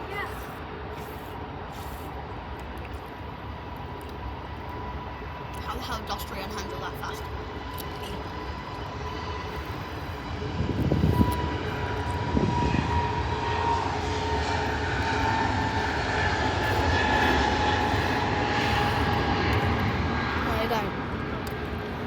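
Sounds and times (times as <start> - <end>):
jet engines roaring: 3.2 - 22.0
high engine whine falling in pitch: 8.6 - 21.8.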